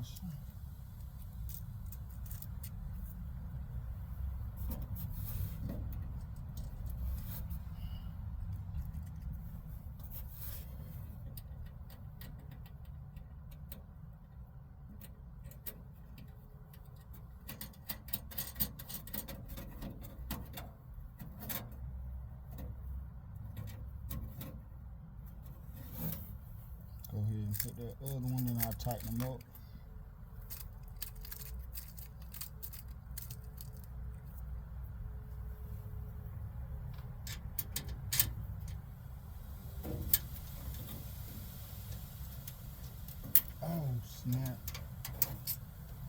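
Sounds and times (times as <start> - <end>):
steady low rumble: 0.0 - 11.4, 26.3 - 46.0
small metal clicks and rattles: 1.3 - 3.2, 5.7 - 7.2, 8.4 - 10.1, 11.2 - 21.9, 27.0 - 29.8, 30.4 - 34.6, 36.9 - 38.8, 42.4 - 46.0.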